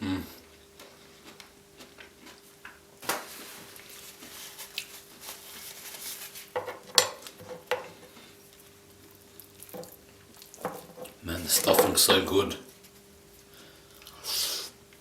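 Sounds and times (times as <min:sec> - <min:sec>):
eating sounds: 0:08.5 - 0:11.8
cutlery clinking against dish: 0:10.7 - 0:12.2.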